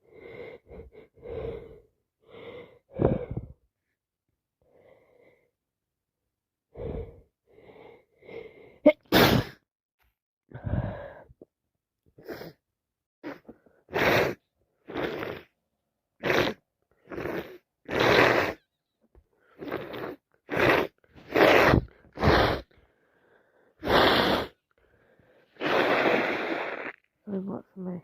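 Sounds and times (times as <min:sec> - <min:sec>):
woman sneezing: 0:08.9 - 0:09.6.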